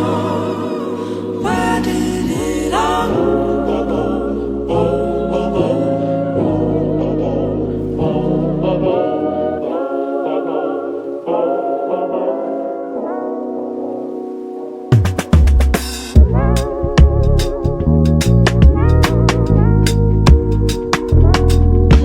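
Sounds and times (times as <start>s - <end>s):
bass line: 15.4s - 22.0s.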